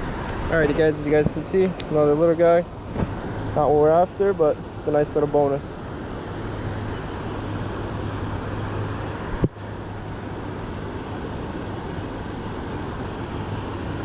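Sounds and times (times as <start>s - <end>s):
rushing background noise: 0.0s - 14.0s.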